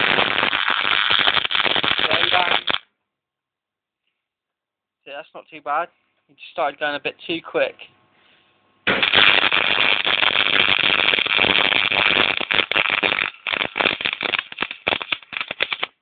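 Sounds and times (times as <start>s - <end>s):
welding arc crackling and sputtering: 0.0s - 2.8s, 8.9s - 16.0s.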